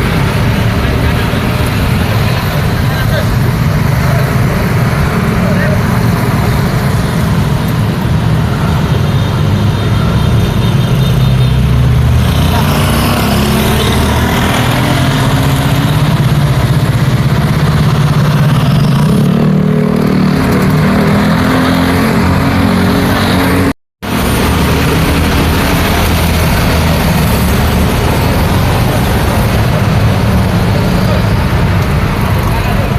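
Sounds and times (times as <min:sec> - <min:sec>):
busy road traffic: 0:00.0 - 0:32.9
vehicle accelerating: 0:11.2 - 0:32.9.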